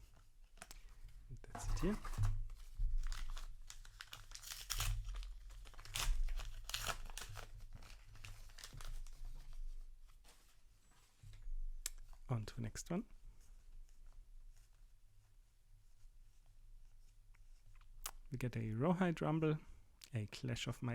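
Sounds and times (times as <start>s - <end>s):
paper wrapper crinkling and tearing: 1.6s - 10.5s.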